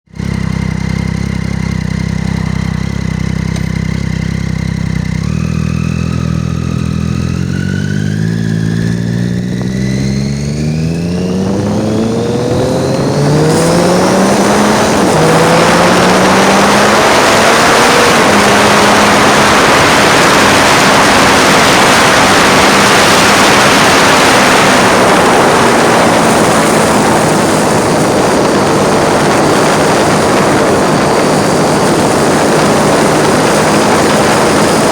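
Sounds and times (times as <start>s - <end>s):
motorcycle engine revving: 0.0s - 34.9s
wind rushing over microphone: 7.5s - 34.9s.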